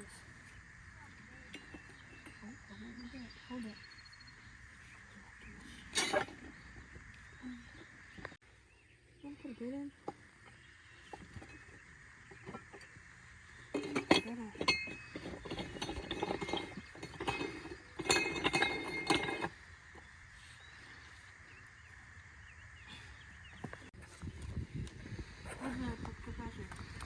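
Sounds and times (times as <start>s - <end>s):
metal tools clinking and rattling: 1.1s - 2.4s, 5.6s - 6.8s, 11.0s - 13.0s, 13.6s - 20.1s.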